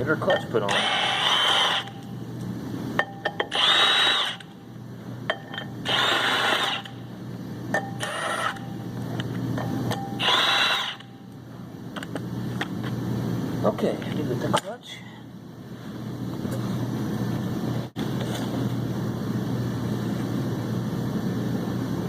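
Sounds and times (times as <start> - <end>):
power tool running: 0.7 - 2.0, 3.4 - 4.5, 5.8 - 7.0, 10.2 - 11.2.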